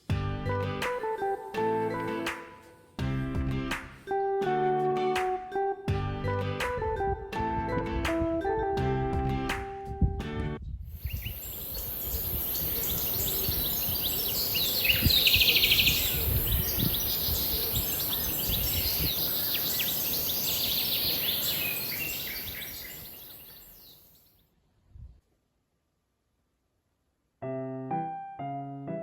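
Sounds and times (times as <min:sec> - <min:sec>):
steady outdoor hiss: 0:11.0 - 0:24.2
small birds chirping: 0:11.0 - 0:24.3.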